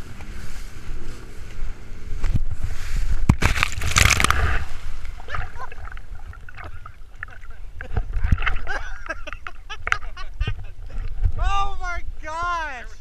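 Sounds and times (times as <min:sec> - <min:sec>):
low rumble of wind and water: 0:00.0 - 0:13.0
water splashing against phone case: 0:03.2 - 0:10.1.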